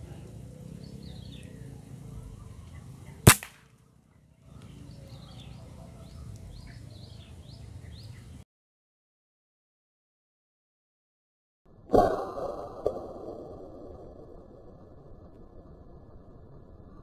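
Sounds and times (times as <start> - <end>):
small birds chirping: 0.0 - 3.4, 4.1 - 8.4
air rifle shot: 3.2 - 3.7.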